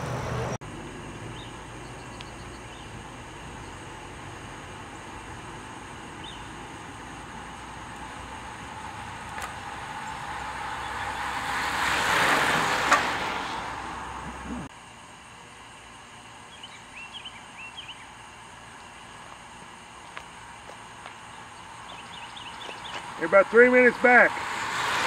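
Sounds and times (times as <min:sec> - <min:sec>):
vehicle passing by: 0:00.0 - 0:02.5, 0:03.6 - 0:14.7, 0:22.4 - 0:25.0.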